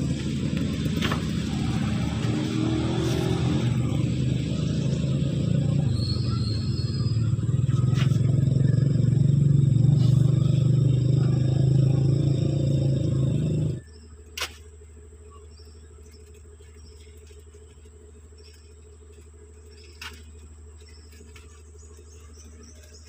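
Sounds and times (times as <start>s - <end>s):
diesel engine idling: 0.0s - 13.8s.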